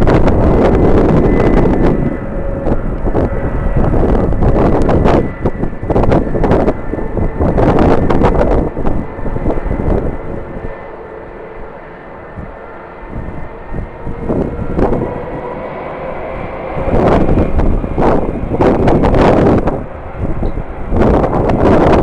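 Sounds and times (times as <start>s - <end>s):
jet engines humming and whining: 0.0s - 22.0s
wind buffeting microphone: 0.0s - 22.0s.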